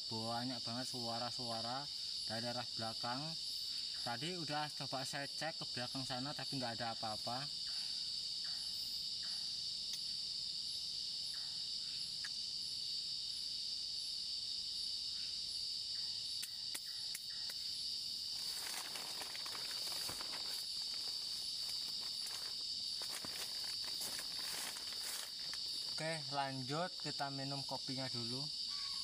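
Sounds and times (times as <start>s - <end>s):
crickets chirring: 0.0s - 29.0s
close rustling and crackling: 18.3s - 26.1s.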